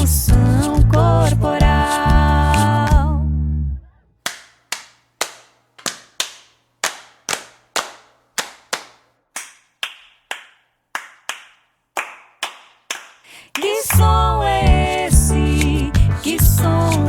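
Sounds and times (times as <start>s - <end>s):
hand claps: 2.5s - 3.0s, 4.3s - 14.1s.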